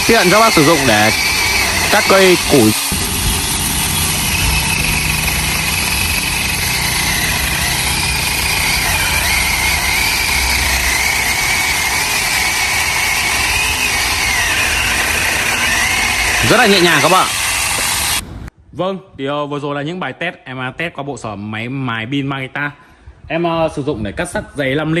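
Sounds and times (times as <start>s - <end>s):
chainsaw cutting wood: 0.0s - 18.2s.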